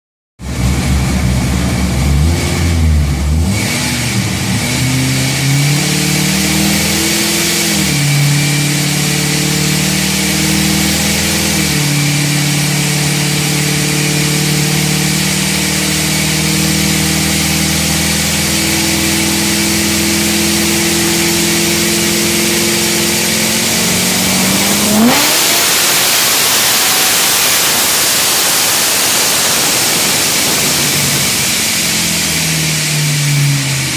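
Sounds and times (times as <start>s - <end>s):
car engine revving: 0.4s - 33.9s
loud steady hiss: 8.1s - 33.9s.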